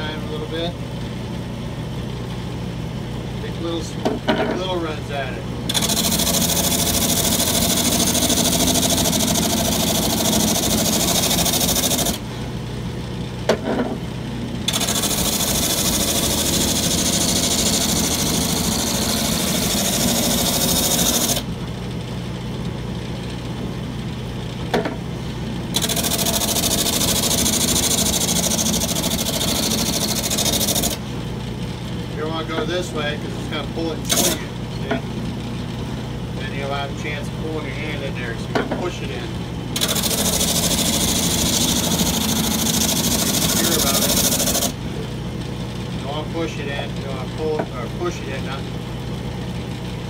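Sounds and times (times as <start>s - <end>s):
motor low hum: 0.0s - 37.9s, 38.6s - 46.1s
drum sander grinding wood: 5.7s - 12.3s, 14.6s - 21.5s, 25.7s - 31.2s, 37.8s - 45.0s.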